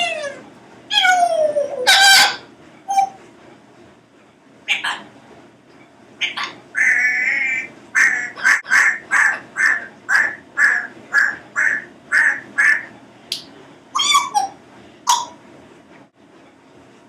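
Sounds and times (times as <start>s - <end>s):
parrot calling: 0.0s - 3.2s, 4.7s - 5.1s, 6.2s - 12.9s, 14.0s - 15.4s.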